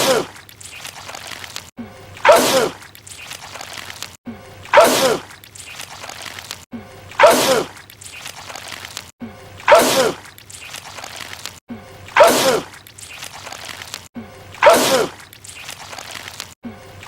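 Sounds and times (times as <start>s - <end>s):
man sneezing: 2.2s - 2.8s, 4.8s - 5.2s, 7.2s - 7.7s, 9.7s - 10.2s, 12.2s - 12.7s, 14.6s - 15.2s.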